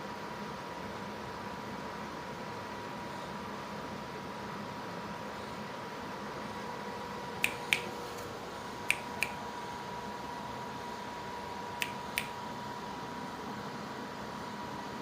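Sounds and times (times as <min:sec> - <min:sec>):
sharp clicks: 0:07.4 - 0:07.9, 0:08.9 - 0:09.4, 0:11.8 - 0:12.4.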